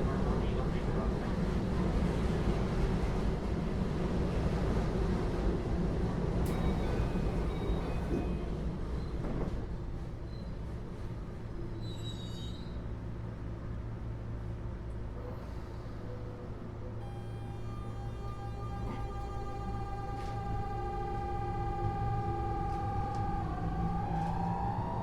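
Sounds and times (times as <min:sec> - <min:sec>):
train wheels and motors rumbling: 0:00.1 - 0:25.0
low hum: 0:15.2 - 0:25.0
faint high tones: 0:17.0 - 0:25.0.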